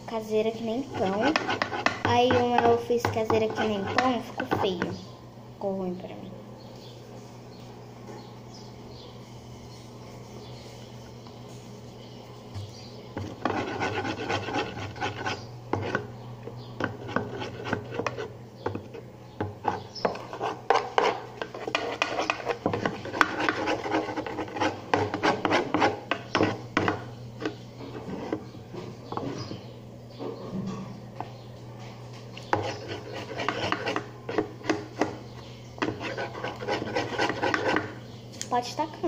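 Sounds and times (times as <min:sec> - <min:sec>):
utensil scraping slime container: 0:01.0 - 0:04.8.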